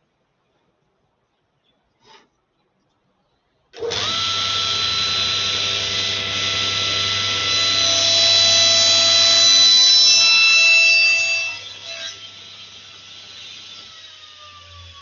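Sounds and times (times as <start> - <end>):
table saw running: 3.8 - 15.0.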